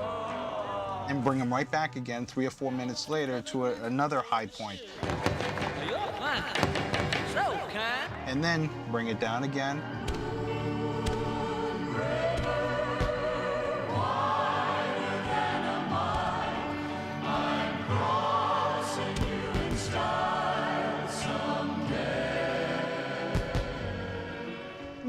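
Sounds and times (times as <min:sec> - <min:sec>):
voices singing long notes: 0:00.0 - 0:01.5, 0:08.1 - 0:25.0.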